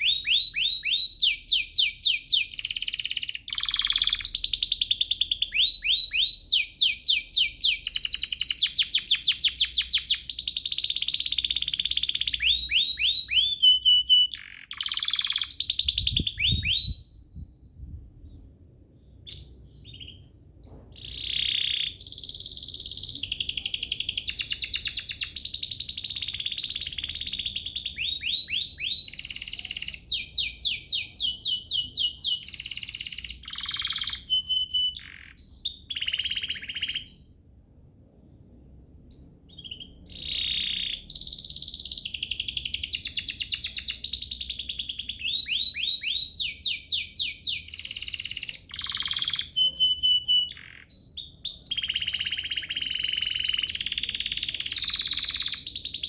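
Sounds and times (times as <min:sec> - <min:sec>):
canary singing: 0:00.0 - 0:17.3, 0:19.2 - 0:37.3, 0:39.1 - 0:56.0
low rumble: 0:16.2 - 0:19.2.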